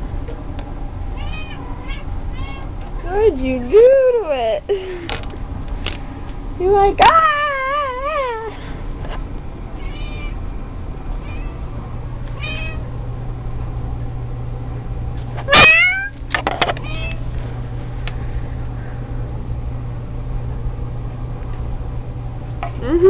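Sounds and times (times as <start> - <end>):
steady low hum: 0.0 - 23.0
kitten meowing: 1.2 - 2.7, 9.8 - 10.4, 11.2 - 11.6, 12.4 - 12.9, 15.5 - 16.2, 16.8 - 17.2.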